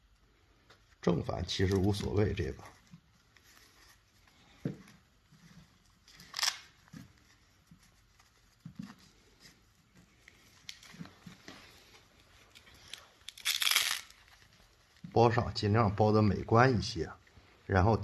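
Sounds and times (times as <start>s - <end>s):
rustling and light knocks: 2.6s - 12.9s.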